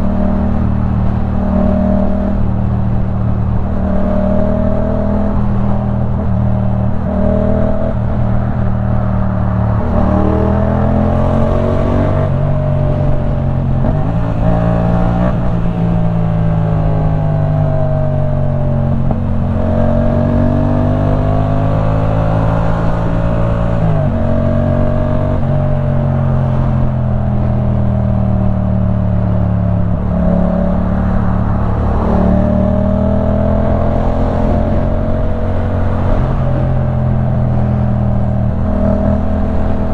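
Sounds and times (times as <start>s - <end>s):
motorcycle engine revving: 3.6s - 27.5s.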